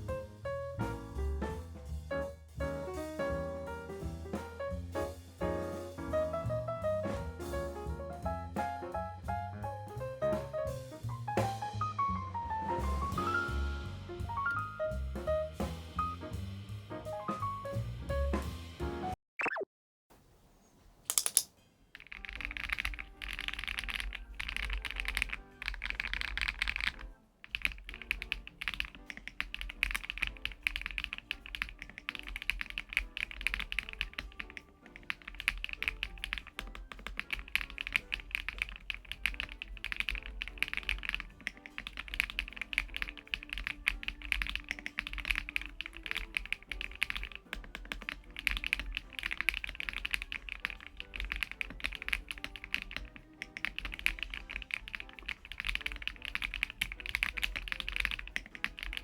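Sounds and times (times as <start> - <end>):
quiet background music: 0.0 - 19.2, 20.2 - 59.0
mechanical keyboard typing: 21.1 - 59.0.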